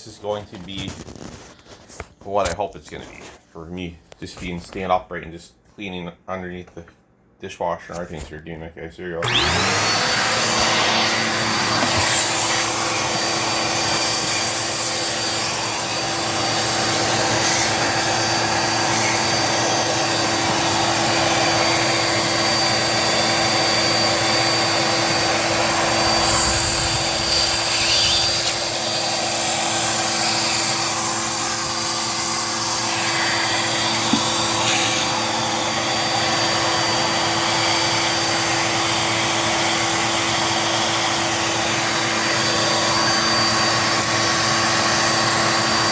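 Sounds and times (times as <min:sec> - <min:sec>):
vacuum cleaner motor whine: 0:09.2 - 0:45.9.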